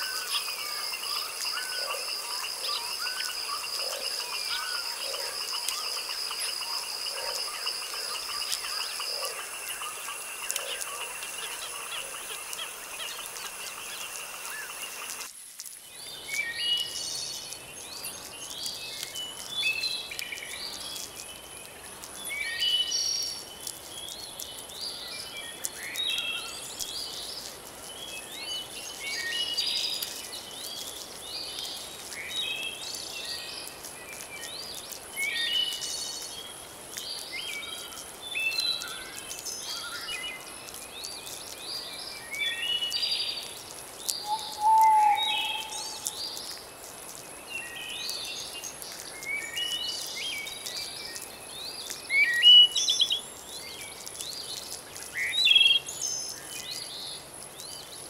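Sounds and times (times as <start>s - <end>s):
frogs calling: 0.0s - 15.3s, 44.0s - 46.7s
high insect buzz: 0.0s - 15.7s, 42.8s - 47.3s
insects trilling: 0.0s - 58.0s
birds singing: 44.0s - 46.6s.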